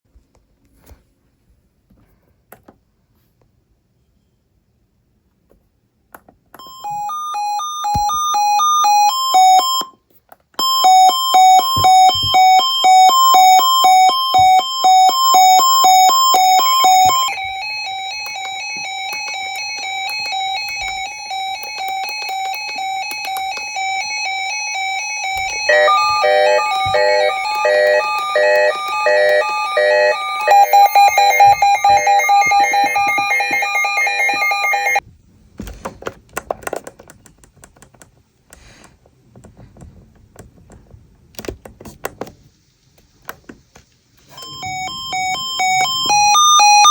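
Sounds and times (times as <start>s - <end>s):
weather radio alarm beeps: 10.6s - 35.0s, 44.3s - 46.9s.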